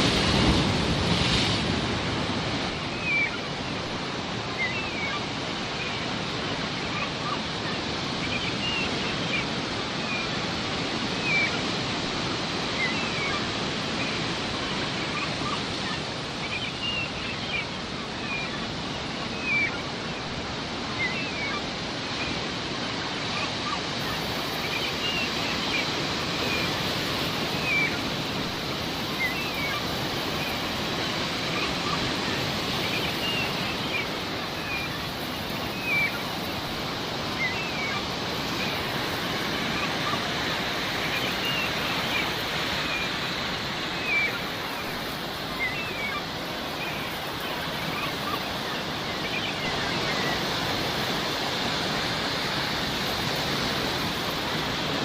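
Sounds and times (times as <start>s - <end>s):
sea waves washing: 0.0s - 55.0s
seagulls calling: 12.6s - 55.0s.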